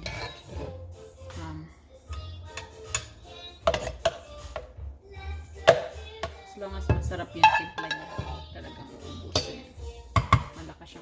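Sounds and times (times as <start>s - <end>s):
utensils clinking against dishes: 0.0s - 0.7s, 2.1s - 4.2s, 6.9s - 10.6s
background music with held notes: 0.0s - 11.0s.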